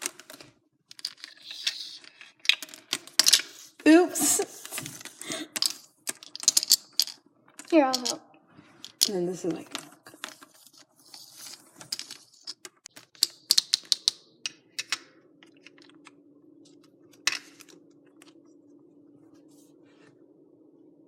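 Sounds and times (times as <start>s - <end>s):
faint steady hum: 0.0s - 21.0s
plastic toys clicking: 5.0s - 8.2s.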